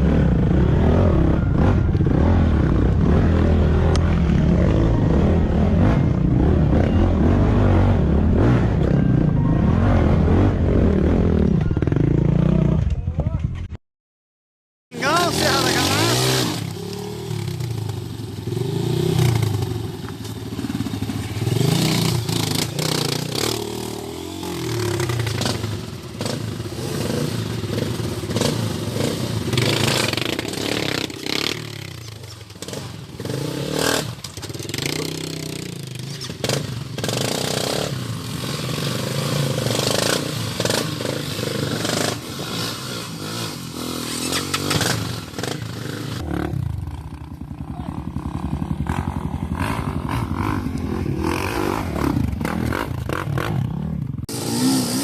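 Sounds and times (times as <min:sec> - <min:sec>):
motorcycle engine revving: 0:00.0 - 0:13.0, 0:14.9 - 0:55.0.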